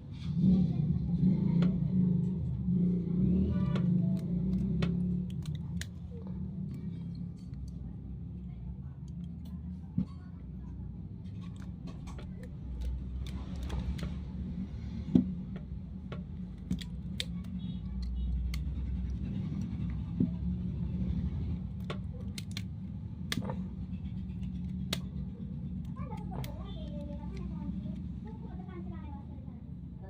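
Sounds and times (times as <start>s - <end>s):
small tools clicking and tapping: 3.7s - 8.3s, 11.2s - 14.3s, 15.1s - 20.4s, 21.6s - 28.3s.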